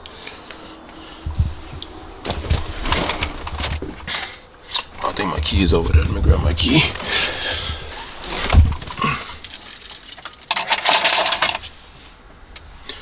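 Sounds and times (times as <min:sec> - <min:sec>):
keys jangling: 0:07.8 - 0:11.6.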